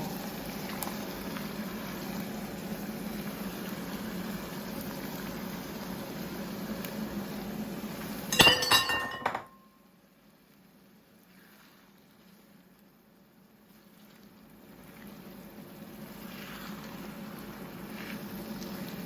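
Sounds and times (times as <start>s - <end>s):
ringing clinks: 8.3s - 9.6s.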